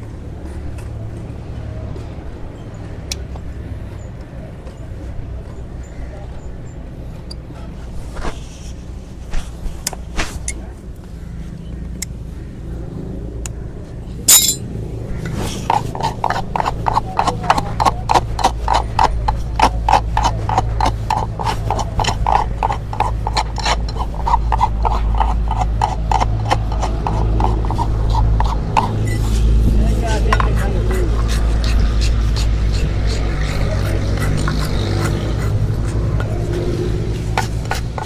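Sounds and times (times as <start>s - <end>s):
hoof rasp strokes: 15.3s - 29.7s.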